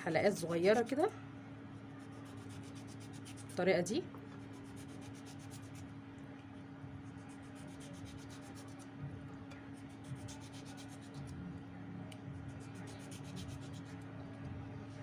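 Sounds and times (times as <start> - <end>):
steady low hum: 0.0 - 15.0
knife slicing tomato: 7.2 - 8.8, 9.8 - 11.4.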